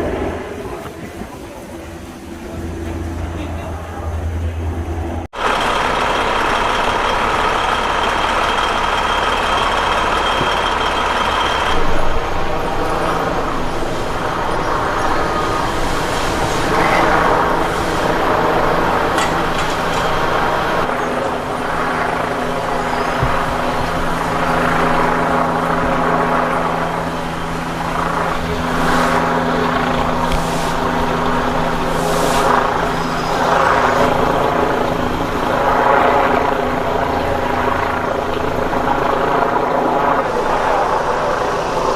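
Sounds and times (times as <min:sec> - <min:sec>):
engine drone: 0:00.0 - 0:41.9.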